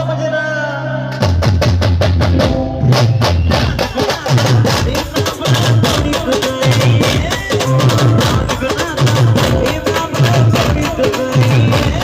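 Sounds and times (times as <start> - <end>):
live band playing: 0.0 - 12.0
repeating bass figure: 1.0 - 3.7
drum and percussion strikes: 1.1 - 12.0.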